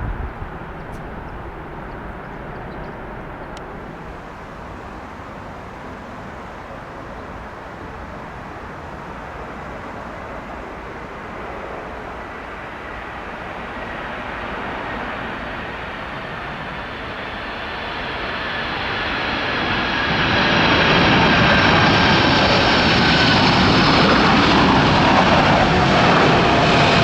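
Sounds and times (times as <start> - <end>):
high engine whine: 0.0 - 5.7
distant jet engines rumbling: 0.0 - 27.0.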